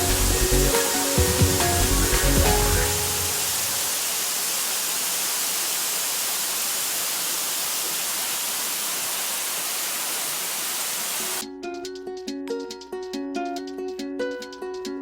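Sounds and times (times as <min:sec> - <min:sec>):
waterfall rushing: 0:00.0 - 0:11.4.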